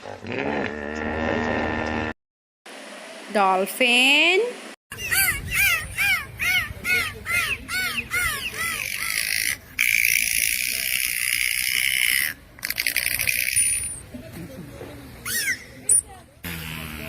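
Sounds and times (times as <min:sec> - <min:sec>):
dolphin high squeal: 0:04.9 - 0:07.0, 0:15.2 - 0:15.8
dolphin clicks: 0:09.8 - 0:13.9
dolphin chirps: 0:15.2 - 0:16.0.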